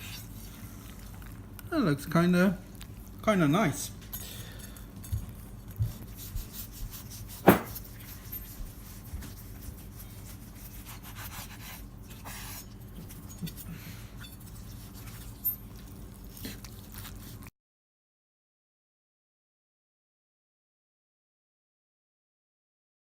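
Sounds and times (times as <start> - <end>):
handling knocks and clicks: 7.4 - 7.8
sharp knock: 7.4 - 7.8.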